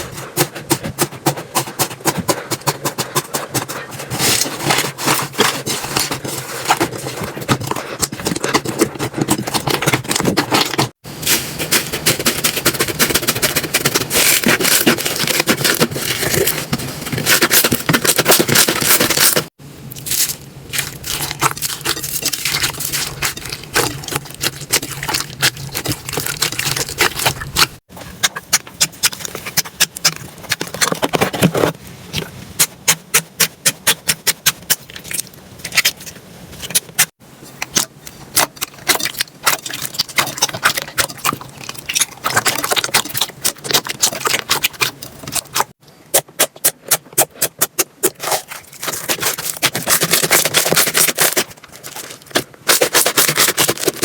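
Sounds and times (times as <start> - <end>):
slime clicking and squelching: 11.6 - 31.2, 32.1 - 54.0.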